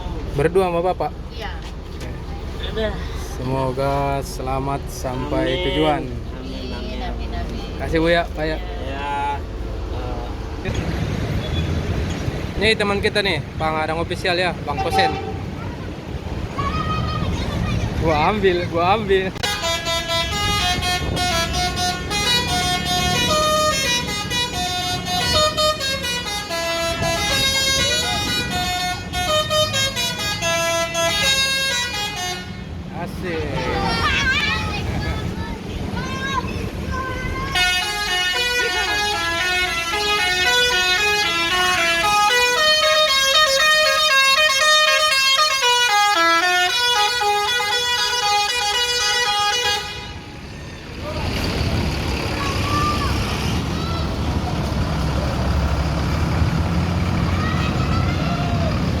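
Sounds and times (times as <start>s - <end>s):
musical bus horn playing a tune: 14.8s - 15.6s, 19.4s - 32.9s, 37.5s - 50.5s.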